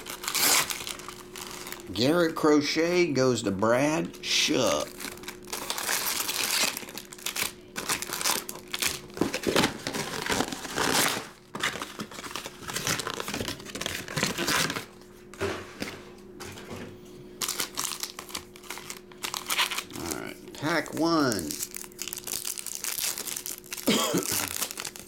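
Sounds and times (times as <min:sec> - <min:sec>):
wrapper tearing: 0:00.0 - 0:01.9, 0:04.8 - 0:14.9, 0:17.4 - 0:25.0
card pack wrappers crinkling: 0:00.0 - 0:02.1, 0:04.0 - 0:14.9, 0:17.4 - 0:25.0.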